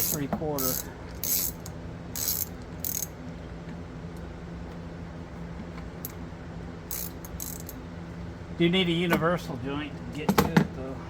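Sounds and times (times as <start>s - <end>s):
ratchet wrench clicking: 0.0s - 3.1s, 6.9s - 7.8s
steady low hum: 0.0s - 11.0s.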